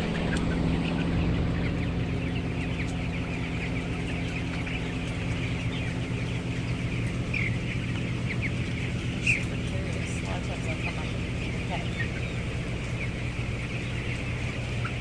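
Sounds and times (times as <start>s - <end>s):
chicks cheeping and chirping: 0.0s - 15.0s
ventilation fans humming: 0.0s - 15.0s.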